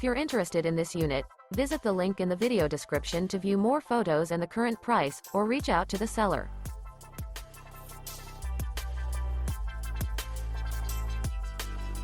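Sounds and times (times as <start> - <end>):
electronic music: 5.1 - 12.0
heavy bass: 5.6 - 12.0
deep drum hits: 8.5 - 8.8.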